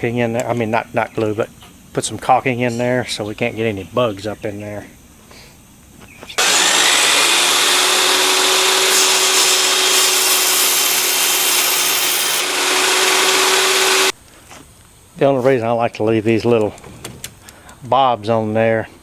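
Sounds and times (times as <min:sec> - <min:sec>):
power tool running on wood: 0:06.4 - 0:14.1.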